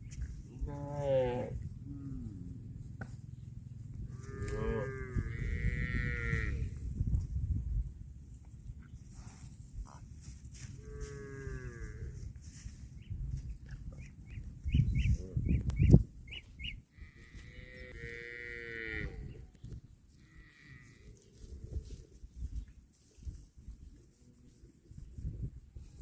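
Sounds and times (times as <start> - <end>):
cattle mooing: 0.6 - 2.6, 4.1 - 6.7, 17.0 - 19.4.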